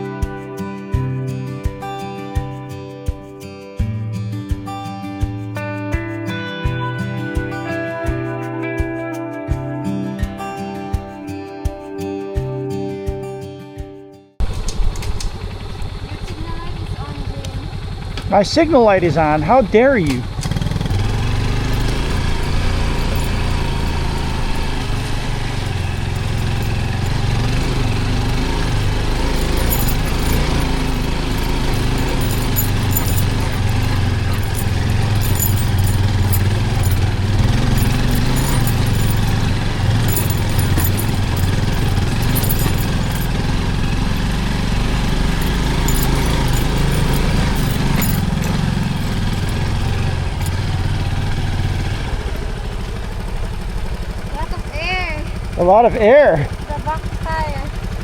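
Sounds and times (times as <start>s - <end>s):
small motorcycle engine rumbling: 15.4s - 58.0s
light rattles: 21.0s - 50.8s.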